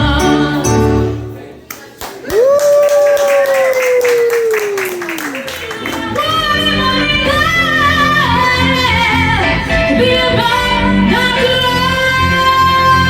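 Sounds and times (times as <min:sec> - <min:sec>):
sliding lead melody: 0:00.0 - 0:01.5
keyboard chords: 0:00.0 - 0:01.6.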